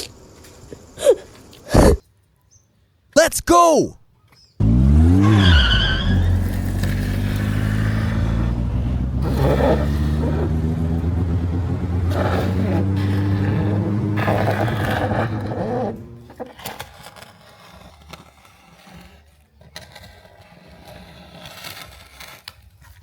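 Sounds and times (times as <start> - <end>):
car engine starting and running: 4.6 - 16.5.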